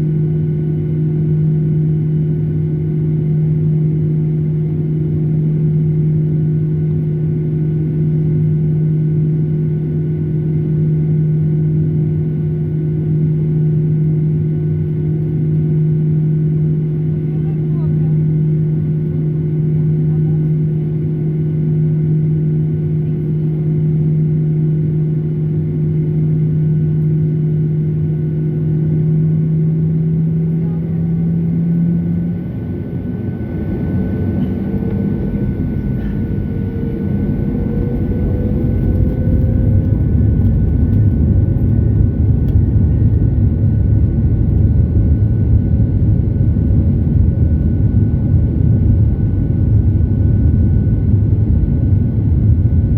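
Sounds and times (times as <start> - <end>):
jet engines humming: 14.3 - 52.9
jet engine whine rising in pitch: 23.7 - 52.9.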